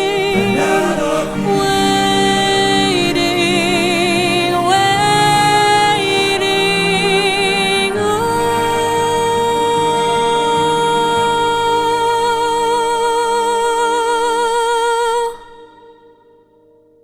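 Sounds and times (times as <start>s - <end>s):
low musical accompaniment: 0.0s - 13.0s.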